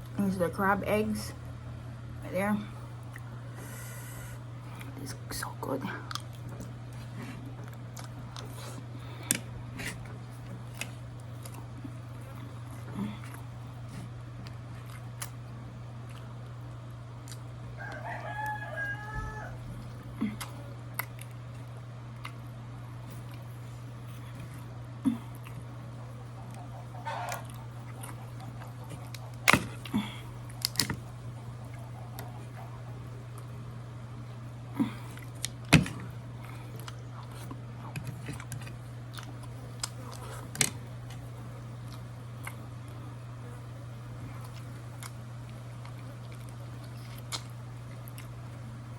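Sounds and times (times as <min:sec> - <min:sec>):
steady low hum: 0:00.0 - 0:48.9
rooster crowing: 0:17.8 - 0:19.7
crab shell cracking: 0:27.2 - 0:31.1.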